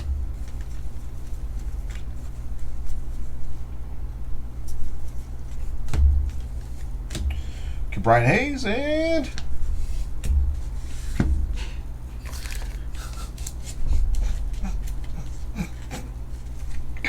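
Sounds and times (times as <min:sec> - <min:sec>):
low hum: 0:00.0 - 0:02.1.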